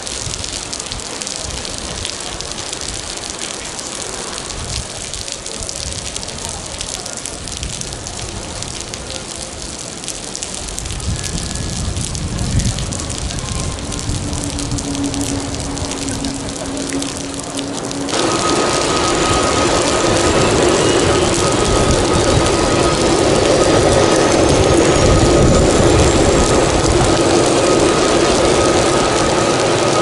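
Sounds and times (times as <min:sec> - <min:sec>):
heavy rain pattering: 0:00.0 - 0:30.0
low rumble: 0:10.8 - 0:30.0.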